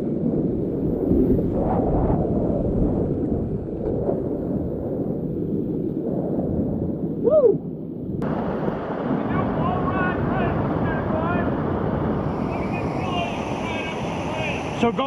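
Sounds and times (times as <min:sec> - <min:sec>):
wind buffeting microphone: 0:00.0 - 0:15.0
whitewater rushing: 0:08.2 - 0:15.0.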